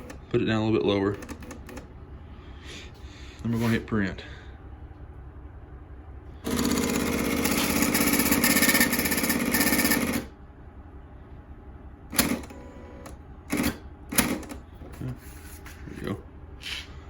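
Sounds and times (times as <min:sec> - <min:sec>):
ticket printer rattling: 0:06.5 - 0:10.3, 0:12.2 - 0:12.6, 0:13.5 - 0:14.6.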